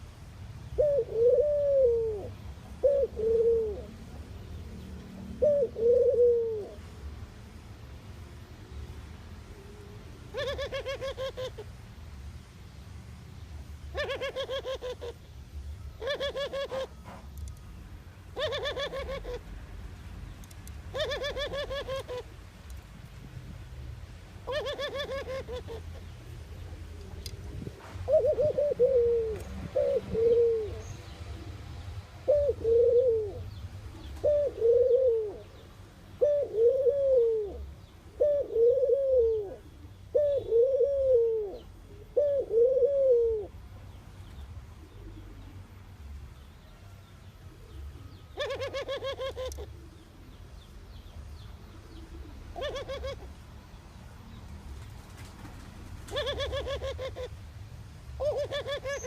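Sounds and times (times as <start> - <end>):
dove cooing: 0.8 - 4.2, 5.2 - 6.9, 9.6 - 11.7, 13.9 - 15.3, 16.0 - 17.3, 18.3 - 19.5, 20.9 - 22.3, 24.4 - 26.1, 26.8 - 35.6, 36.2 - 43.6, 44.8 - 45.8, 47.5 - 50.4, 51.8 - 53.4, 55.9 - 57.4, 58.2 - 59.0.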